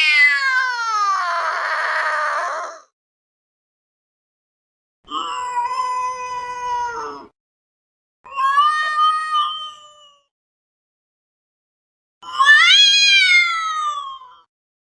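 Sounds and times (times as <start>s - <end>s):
cat meowing: 0.0s - 2.8s, 12.2s - 14.5s.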